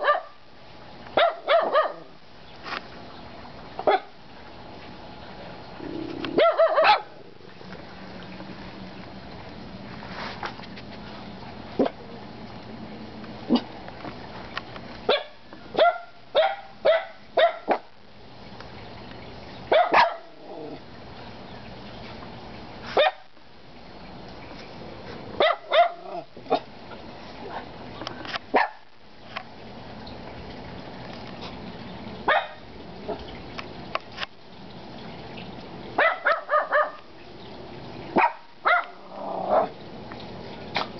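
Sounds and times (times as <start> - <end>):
dogs barking: 0.0 - 0.4, 1.2 - 2.2, 3.8 - 4.2, 6.3 - 7.2, 15.1 - 17.9, 19.7 - 20.8, 22.9 - 23.3, 25.4 - 26.7, 28.5 - 28.9, 32.2 - 33.3, 36.0 - 37.1, 38.1 - 39.8.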